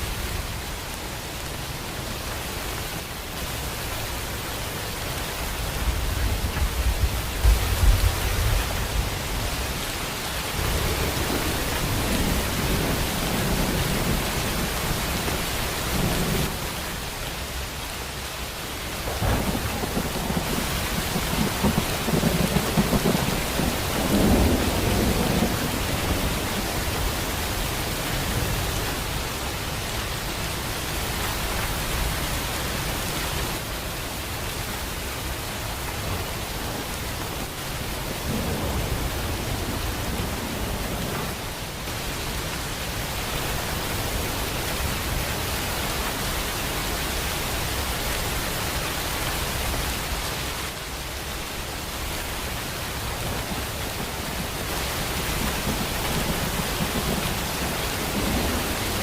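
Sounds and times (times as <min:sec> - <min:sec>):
heavy rain falling: 0:00.0 - 0:59.0
thunder rumbling: 0:05.6 - 0:16.8, 0:18.9 - 0:29.2, 0:36.0 - 0:45.6, 0:53.0 - 0:59.0.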